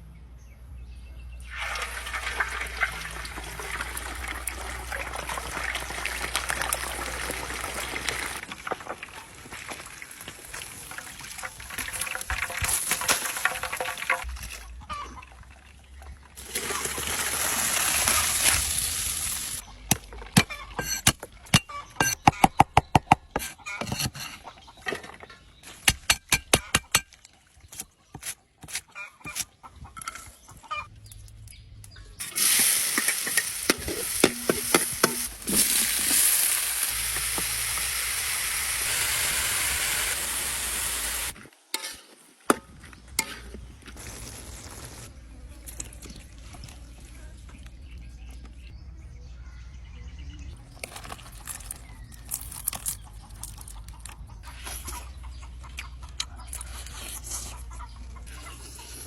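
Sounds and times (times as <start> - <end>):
meat sizzling in a pan: 32.2 - 41.4.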